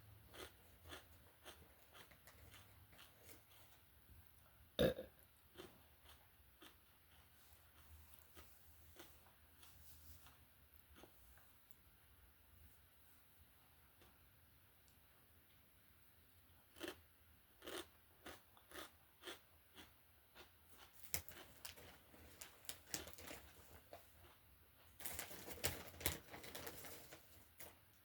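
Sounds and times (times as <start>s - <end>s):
potato chips crunching: 0.3s - 3.8s, 16.7s - 17.0s, 17.6s - 24.4s.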